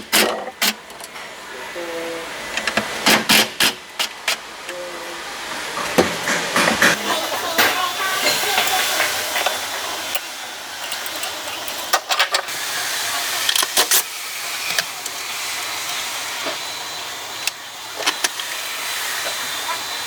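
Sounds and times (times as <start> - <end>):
tools clicking and knocking: 0.0 - 1.2, 7.6 - 12.5
steady hiss: 0.6 - 20.0.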